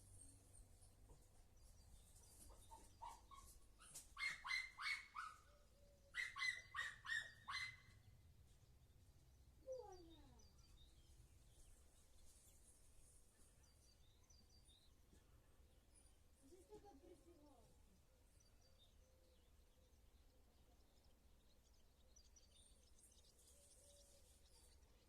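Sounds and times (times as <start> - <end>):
animal bark-like calls: 6.2 - 7.9.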